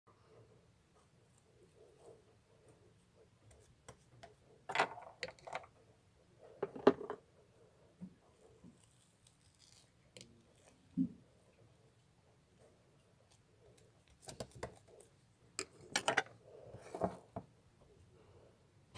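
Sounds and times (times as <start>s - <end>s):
small objects clicking and knocking: 4.7s - 5.7s.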